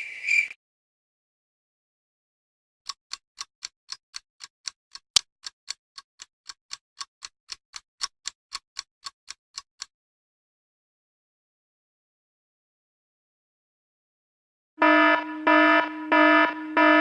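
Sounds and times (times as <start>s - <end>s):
clock ticking: 2.8s - 9.9s.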